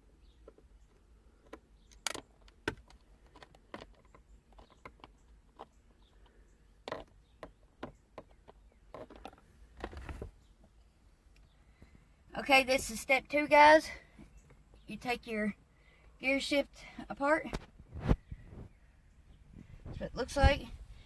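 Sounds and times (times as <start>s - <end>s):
small hard parts clicking: 0.4s - 10.3s.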